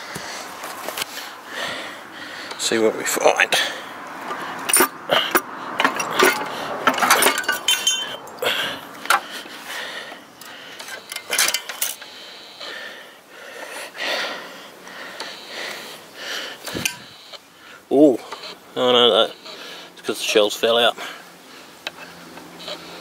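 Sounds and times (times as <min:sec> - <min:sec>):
metal scraping and tapping: 0:04.2 - 0:08.2
metal engine parts clinking: 0:04.2 - 0:08.4, 0:09.0 - 0:09.3, 0:10.4 - 0:12.2, 0:19.2 - 0:20.8.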